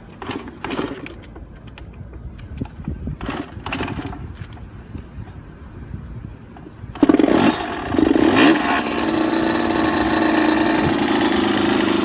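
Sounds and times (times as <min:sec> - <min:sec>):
two-stroke motorcycle engine starting: 0:00.0 - 0:01.4, 0:03.2 - 0:04.3, 0:06.9 - 0:12.0.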